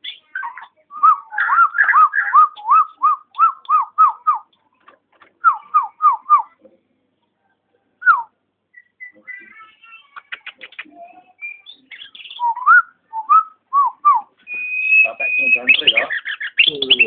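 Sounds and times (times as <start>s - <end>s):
myna whistling: 10.4s - 17.0s.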